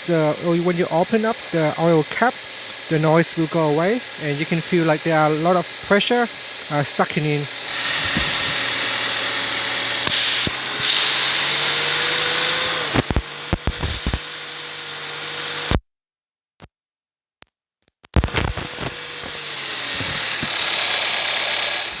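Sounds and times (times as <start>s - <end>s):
clicks: 12.4s - 14.4s, 17.4s - 19.4s.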